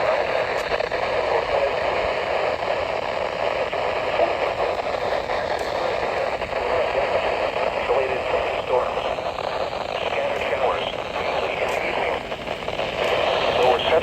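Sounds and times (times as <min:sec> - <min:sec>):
radio static hiss: 0:00.0 - 0:14.0.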